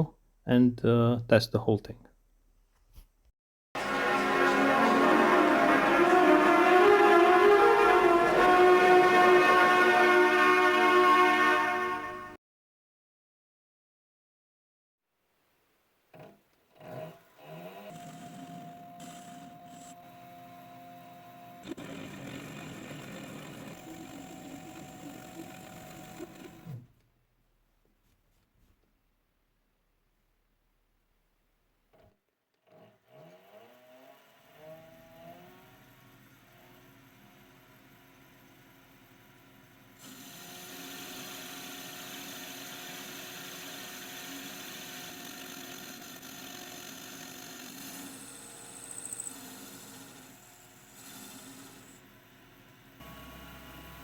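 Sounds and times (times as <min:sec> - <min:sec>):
workshop machine motor hum: 0:03.8 - 0:12.3, 0:18.4 - 0:26.8, 0:39.6 - 0:54.0
thin high whine: 0:48.1 - 0:50.9.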